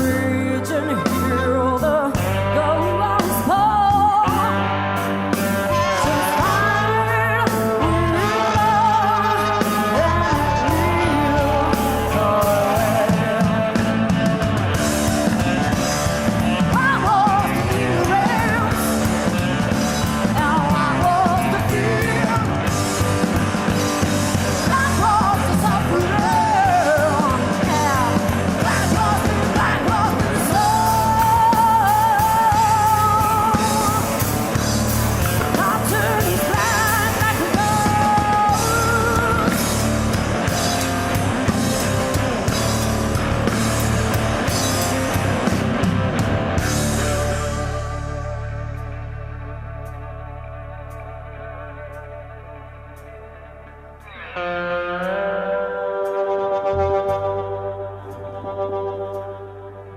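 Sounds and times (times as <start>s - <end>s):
woman singing: 0.0s - 4.8s, 5.6s - 14.6s, 16.4s - 23.2s, 23.8s - 40.1s
rock band playing live: 0.0s - 59.9s.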